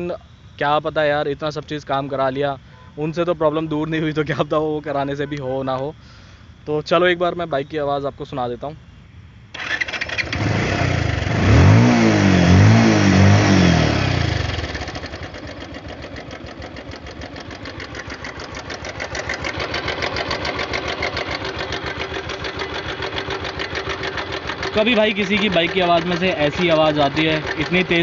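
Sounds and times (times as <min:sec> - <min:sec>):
motorcycle engine revving and idling: 0:09.6 - 0:28.0.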